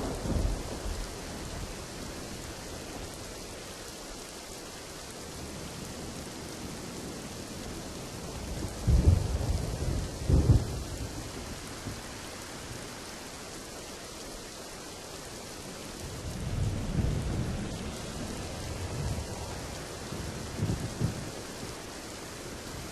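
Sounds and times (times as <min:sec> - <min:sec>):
rolling thunder rumble: 0:00.0 - 0:03.4, 0:05.3 - 0:12.7, 0:16.0 - 0:22.9
steady rain falling: 0:00.0 - 0:22.9.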